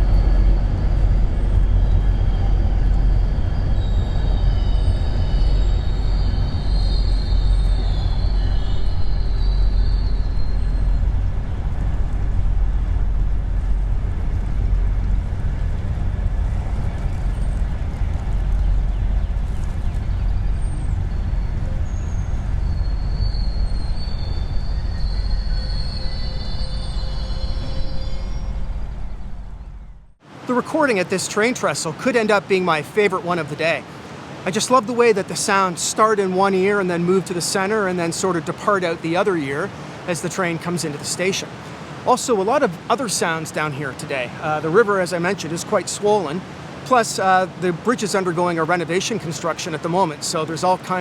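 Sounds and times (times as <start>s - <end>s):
high squealing tones: 0.0s - 15.4s, 20.3s - 30.1s
train wheels rumbling on rails: 0.0s - 30.1s.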